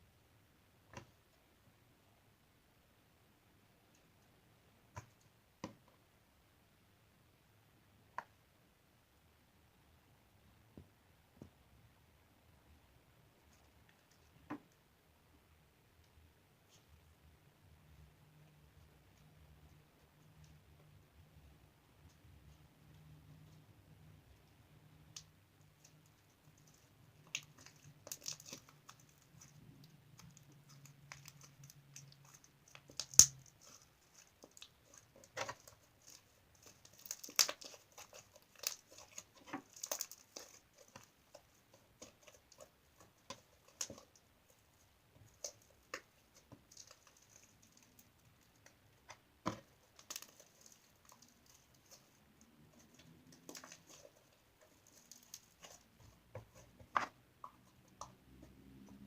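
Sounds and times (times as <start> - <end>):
faint low hum: 0.0 - 59.0
slime clicking and popping: 30.2 - 41.1.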